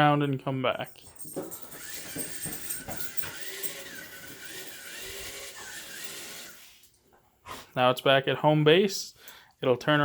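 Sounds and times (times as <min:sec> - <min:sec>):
robot motors whirring: 0:03.4 - 0:06.8.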